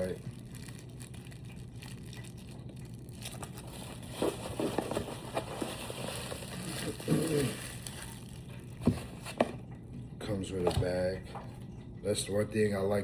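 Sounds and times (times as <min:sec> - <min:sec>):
packaging crinkling: 0:00.0 - 0:09.8.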